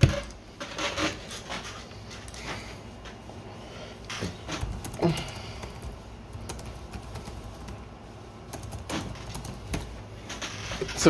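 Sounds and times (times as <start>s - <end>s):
typing on computer keyboard: 4.4s - 7.9s, 8.5s - 9.9s.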